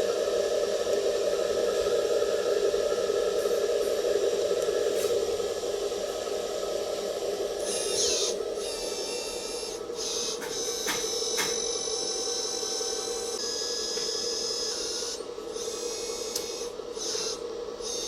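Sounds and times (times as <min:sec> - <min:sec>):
high whining tones: 0:00.0 - 0:18.0
hydraulic pump motor humming: 0:04.1 - 0:18.0.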